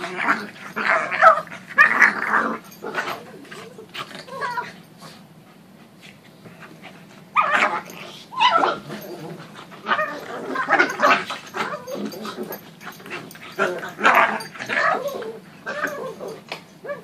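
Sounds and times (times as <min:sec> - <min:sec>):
dog growly yapping: 0:00.0 - 0:04.8, 0:07.3 - 0:17.0
dog yipping and whimpering: 0:00.8 - 0:04.8, 0:07.4 - 0:09.2, 0:09.8 - 0:12.6, 0:13.5 - 0:17.0.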